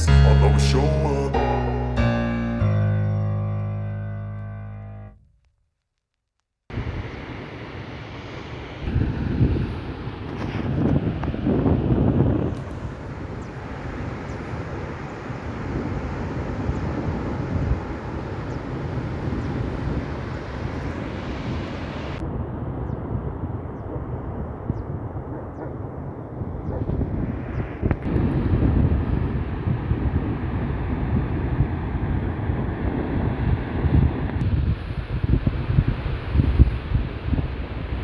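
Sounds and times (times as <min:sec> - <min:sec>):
wind buffeting microphone: 0:08.8 - 0:38.0.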